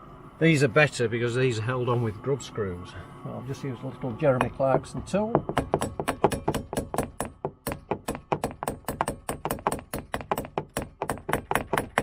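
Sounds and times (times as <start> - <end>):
hammer tapping metal: 4.3 - 12.0.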